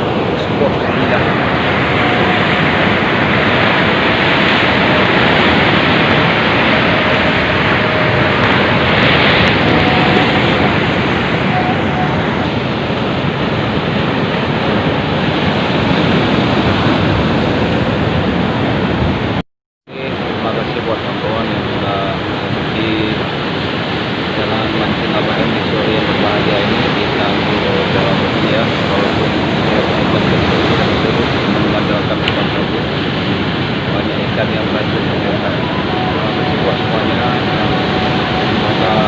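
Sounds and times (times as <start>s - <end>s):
surf rushing: 0.0s - 39.0s
wind on microphone: 0.0s - 39.0s.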